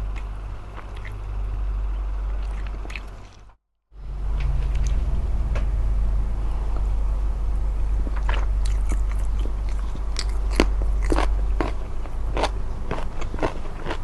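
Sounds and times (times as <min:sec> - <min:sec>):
chewing with crisp crunches: 0:00.0 - 0:01.4, 0:02.3 - 0:03.6, 0:08.0 - 0:14.0
steady low hum: 0:00.0 - 0:14.0.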